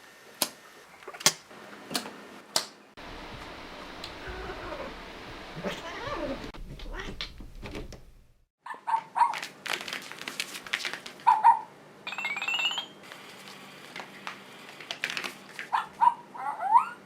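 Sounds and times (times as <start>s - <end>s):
cat growling and yowling: 4.2s - 5.0s, 5.6s - 7.2s.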